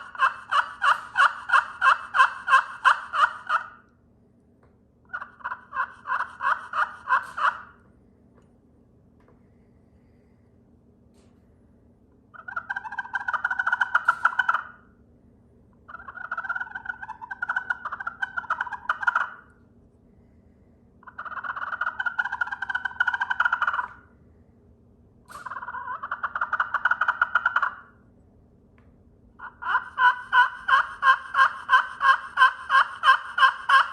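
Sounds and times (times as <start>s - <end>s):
raspy turkey call: 0.0s - 3.8s, 5.1s - 7.8s, 12.4s - 14.9s, 15.9s - 19.5s, 21.0s - 24.1s, 25.4s - 27.9s, 29.4s - 33.9s.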